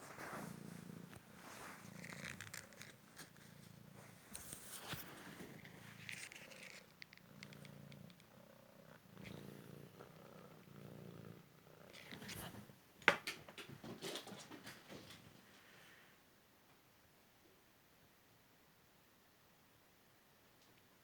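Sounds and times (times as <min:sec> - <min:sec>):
cat purring: 0:00.0 - 0:12.9.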